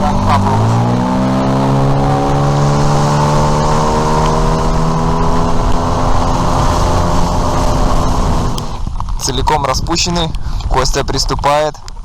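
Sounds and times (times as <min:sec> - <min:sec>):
outboard boat motor running: 0:00.0 - 0:08.9.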